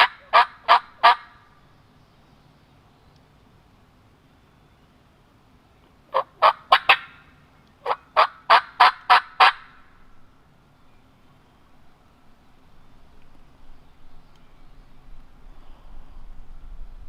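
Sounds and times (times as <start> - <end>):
turkey yelps: 0.0 - 1.4, 6.1 - 7.2, 7.8 - 9.7.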